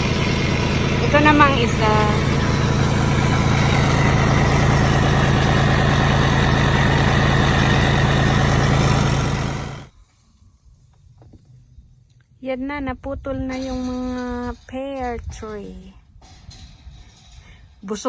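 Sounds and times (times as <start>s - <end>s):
engine idling: 0.0s - 9.9s.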